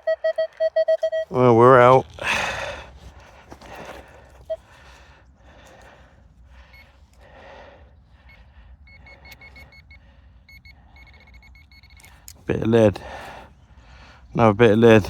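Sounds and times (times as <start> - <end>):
pinpointer beeping rapidly: 0.0 - 1.3, 8.9 - 12.1
soil scraping and rustling: 1.5 - 4.5.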